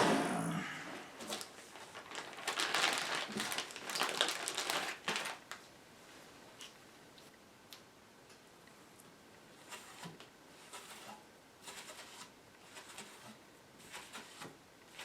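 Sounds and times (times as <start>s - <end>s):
rustling crinkling handling noise: 1.0s - 7.3s.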